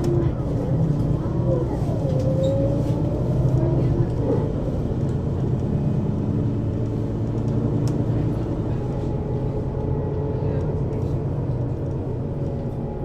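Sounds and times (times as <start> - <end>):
bus engine low drone: 0.0 - 13.0.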